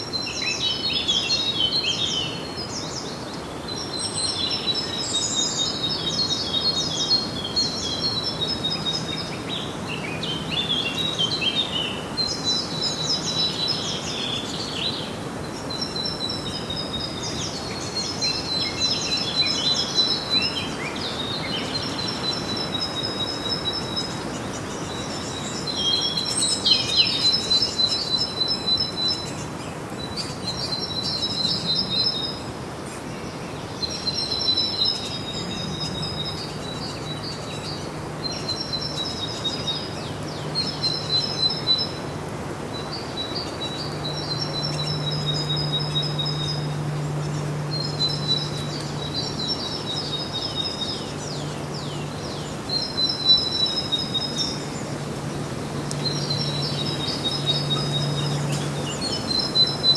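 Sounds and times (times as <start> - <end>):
songbirds singing trills: 0.0 - 59.9
steady background hiss: 0.0 - 59.9
low steady hum: 34.2 - 59.9.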